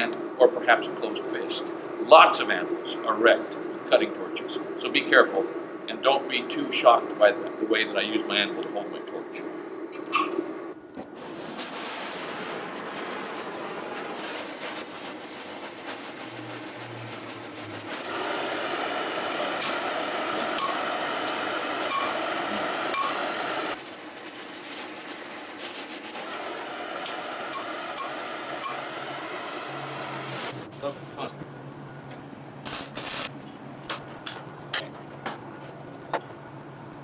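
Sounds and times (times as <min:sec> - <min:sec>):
cutting torch hissing: 0:11.1 - 0:31.3, 0:32.7 - 0:33.3.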